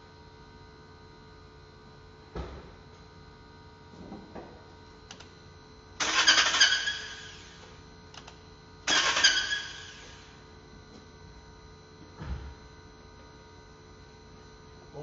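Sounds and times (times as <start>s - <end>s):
engine starter cranking: 6.0s - 7.0s, 8.9s - 9.8s.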